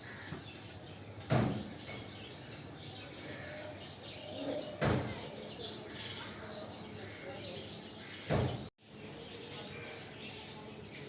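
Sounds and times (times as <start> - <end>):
budgies chirping: 0.0 - 11.0
thump: 1.3 - 1.7, 4.8 - 5.3, 8.3 - 8.6.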